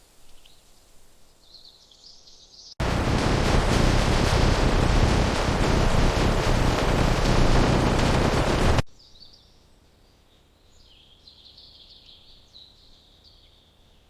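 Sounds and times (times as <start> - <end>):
loud rushing noise: 2.8 - 8.8.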